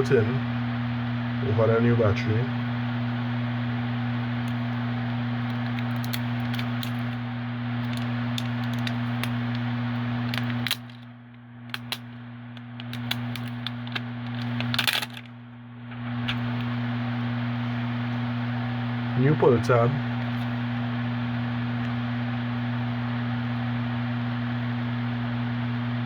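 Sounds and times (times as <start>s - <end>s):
low electrical hum: 0.0s - 26.0s
plastic film crinkling: 5.4s - 11.1s, 12.7s - 15.3s
sharp clicks of handling: 7.8s - 9.6s, 11.7s - 15.3s.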